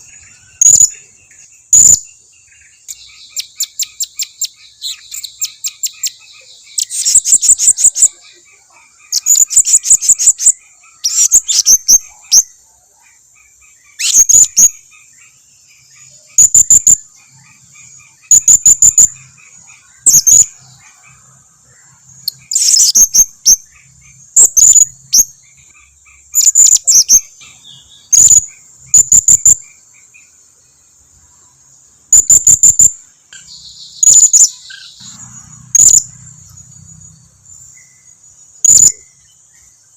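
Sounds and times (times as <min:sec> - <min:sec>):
parrots chirping: 0:00.0 - 0:02.1, 0:02.8 - 0:30.4, 0:32.1 - 0:39.2
high insect drone: 0:13.4 - 0:39.9.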